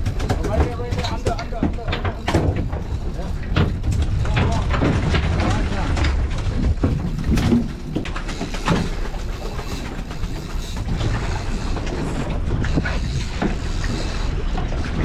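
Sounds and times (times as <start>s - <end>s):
sharp knocks: 0.0s - 11.2s
boat engine running: 0.0s - 15.0s
water noise: 0.0s - 15.0s
wind: 0.0s - 15.0s.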